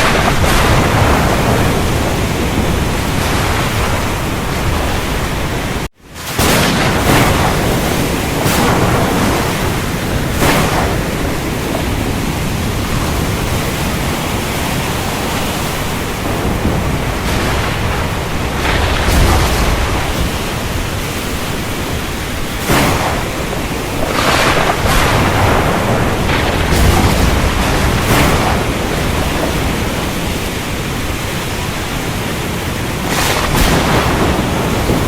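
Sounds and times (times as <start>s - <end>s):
heavy rain pouring: 0.0s - 35.0s
thunder rumble: 0.0s - 35.0s.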